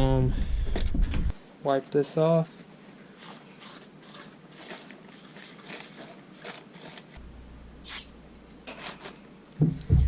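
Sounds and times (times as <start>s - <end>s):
sharp hiss: 7.8s - 8.2s
heavy thump: 9.6s - 10.0s.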